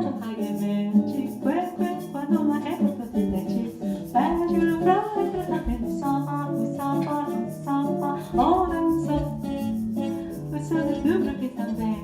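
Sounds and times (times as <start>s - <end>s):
acoustic guitar strumming: 0.0s - 12.0s
person singing: 0.0s - 12.0s.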